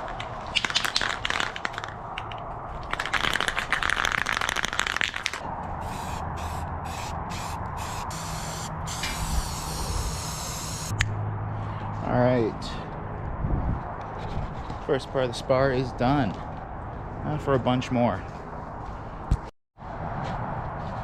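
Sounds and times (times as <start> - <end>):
aerosol can rattling: 0.6 - 1.9, 2.9 - 10.9
short spray bursts: 5.8 - 10.9
spray hiss: 5.8 - 10.9.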